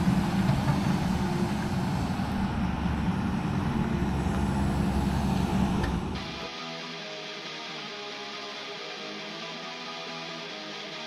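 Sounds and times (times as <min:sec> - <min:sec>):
vehicle engine running: 0:00.0 - 0:06.2.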